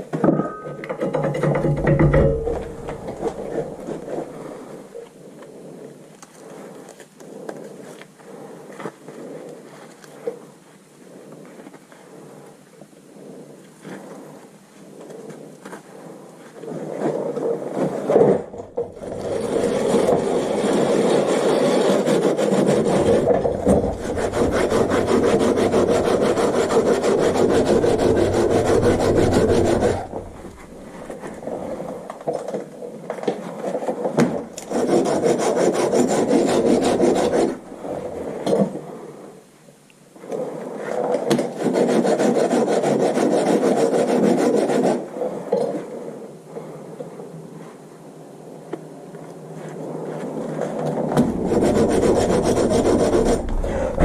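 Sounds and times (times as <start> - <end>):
abrasive scraping of metal: 0.5 - 5.0, 18.3 - 32.1, 34.6 - 38.4, 51.1 - 54.0.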